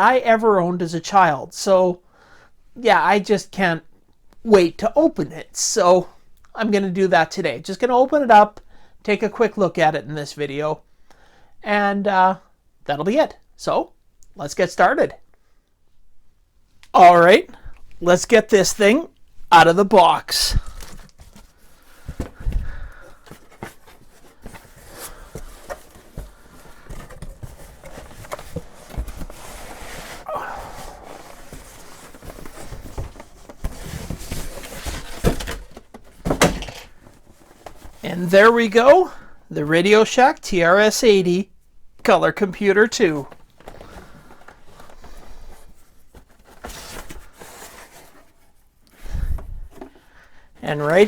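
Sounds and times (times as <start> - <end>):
packaging rustling: 20.3 - 38.0, 43.0 - 50.0
cardboard box knocks and rustles: 31.3 - 36.8.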